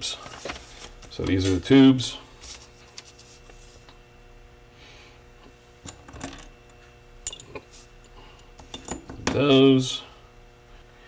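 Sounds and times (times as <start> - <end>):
small metal parts clinking: 5.8 - 6.5, 7.2 - 9.1.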